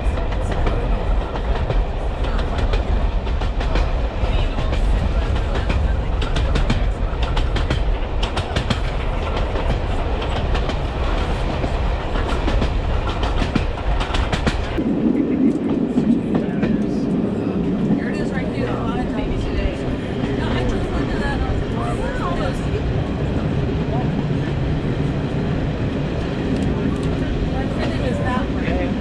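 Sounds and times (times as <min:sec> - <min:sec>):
train carriage rumbling: 0:00.0 - 0:29.0.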